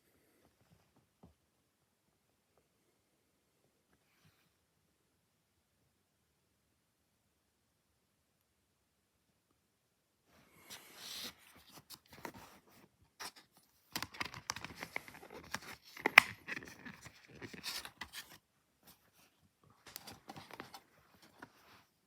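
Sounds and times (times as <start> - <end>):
packaging crinkling and rustling: 11.6 - 18.4, 19.8 - 21.7.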